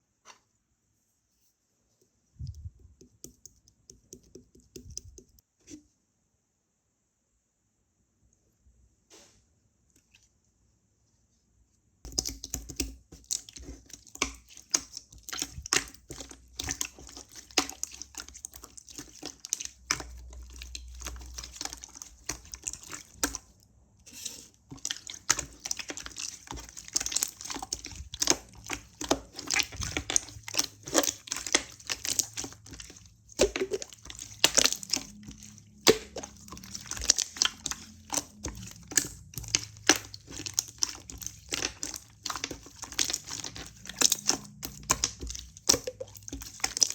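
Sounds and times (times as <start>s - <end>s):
slime sticky clicks and wet pops: 12.1s - 23.5s, 24.8s - 46.9s.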